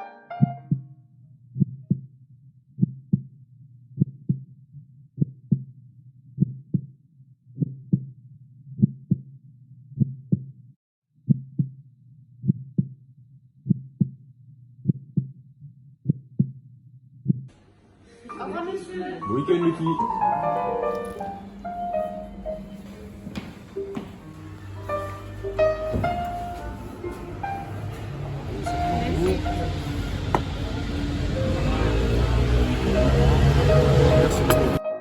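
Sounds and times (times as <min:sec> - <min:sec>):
heartbeat: 0:01.6 - 0:02.1, 0:04.0 - 0:04.5, 0:08.8 - 0:09.3, 0:12.4 - 0:13.0, 0:14.8 - 0:15.4, 0:17.2 - 0:17.5.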